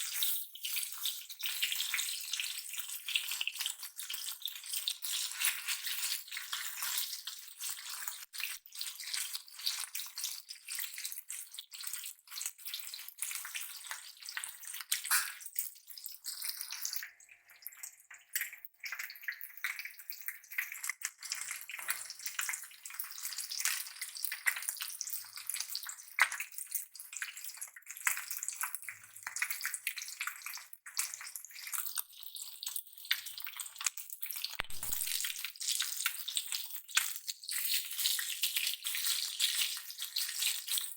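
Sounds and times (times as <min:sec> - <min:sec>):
fish sizzling in hot oil: 0:00.0 - 0:40.9
oil crackling and spattering: 0:28.0 - 0:40.9.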